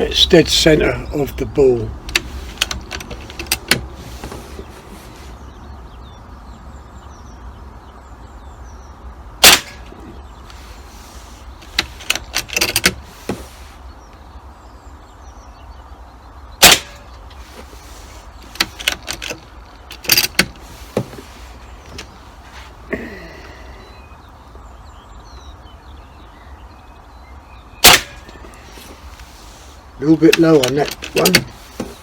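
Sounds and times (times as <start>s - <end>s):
air rifle shot crack: 9.4s - 10.0s, 16.6s - 17.1s, 27.8s - 28.3s.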